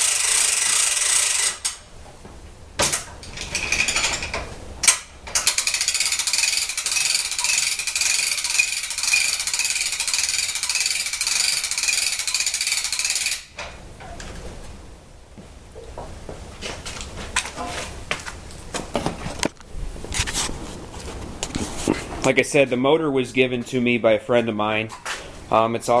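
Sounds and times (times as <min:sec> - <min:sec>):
fast mechanical clicking: 0:02.8 - 0:13.5.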